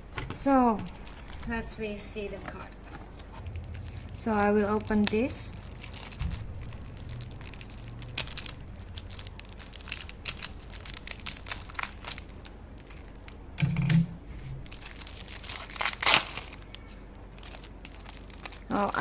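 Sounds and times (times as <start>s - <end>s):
wrapping crinkling and tearing: 0.4s - 13.5s, 14.6s - 19.0s.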